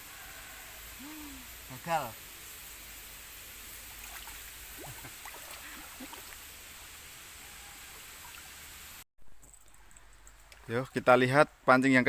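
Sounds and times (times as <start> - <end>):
river water flowing: 3.9 - 9.0.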